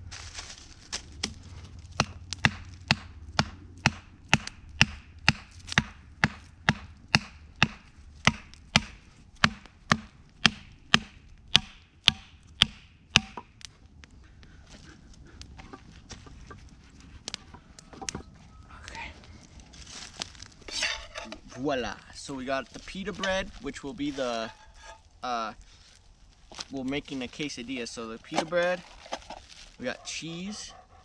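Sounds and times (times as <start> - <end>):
sharp chopping strikes: 2.0 - 13.5.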